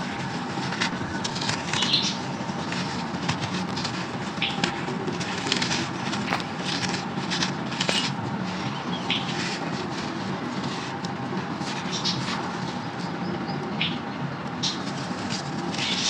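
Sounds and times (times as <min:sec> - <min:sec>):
steady hum: 0:00.0 - 0:16.0
gritty sand crunching: 0:05.4 - 0:08.2.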